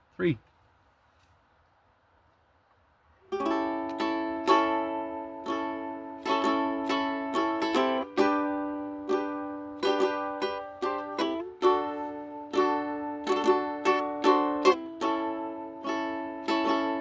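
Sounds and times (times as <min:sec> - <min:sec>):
ukulele plucked: 0:03.3 - 0:17.0.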